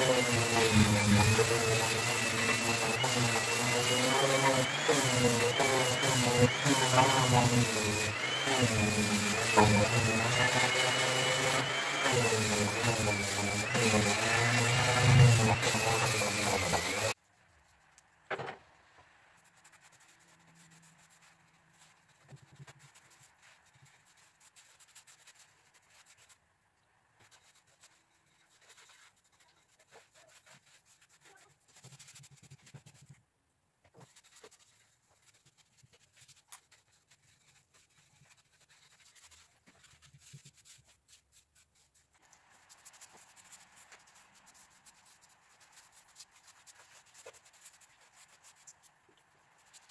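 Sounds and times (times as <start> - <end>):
hand rubbing wood: 0.0 - 17.2.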